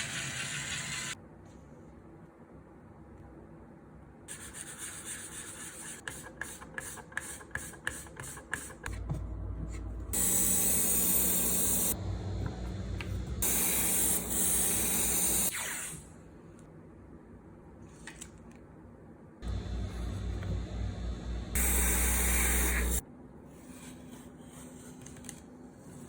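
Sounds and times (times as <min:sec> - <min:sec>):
low steady hum: 0:08.9 - 0:13.7, 0:19.0 - 0:23.0
airbrush spraying hiss: 0:13.4 - 0:15.5, 0:21.6 - 0:23.0.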